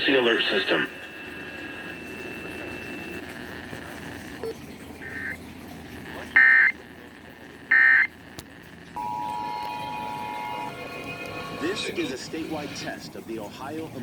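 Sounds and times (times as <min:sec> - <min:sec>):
radio hiss: 0:00.0 - 0:04.4, 0:06.0 - 0:08.8.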